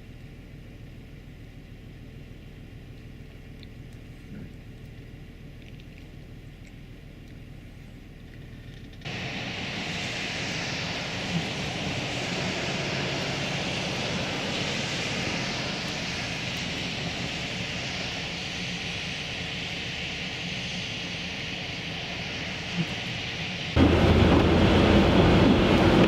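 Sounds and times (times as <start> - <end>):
low engine hum: 0.0 - 26.0
tyre and air hiss: 9.0 - 23.8.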